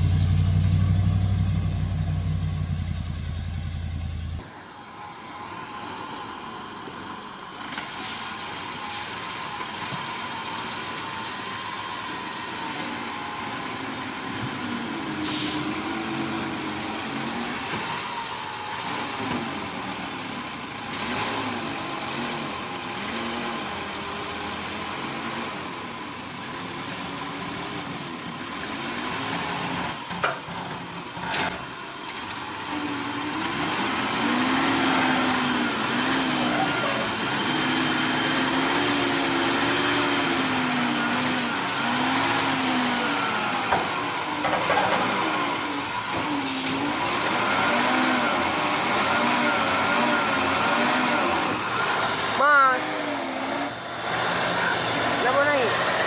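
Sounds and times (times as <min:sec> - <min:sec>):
deeper engine sound: 0:00.0 - 0:09.4
heavy truck engine running: 0:00.0 - 0:56.0.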